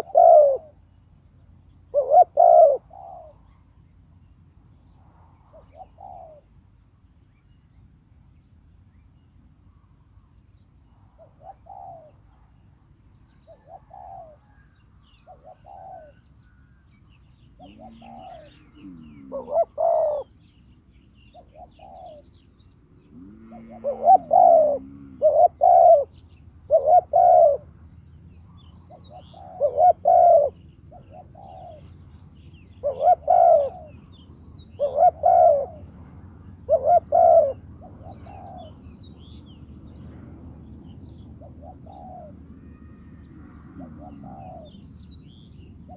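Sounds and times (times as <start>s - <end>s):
doves cooing: 0.0s - 0.8s, 1.9s - 3.4s, 5.6s - 6.5s, 11.2s - 12.2s, 13.5s - 16.2s, 17.5s - 20.4s, 21.4s - 22.3s, 23.0s - 27.7s, 28.9s - 32.0s, 32.7s - 35.9s, 36.7s - 38.9s, 41.4s - 45.9s.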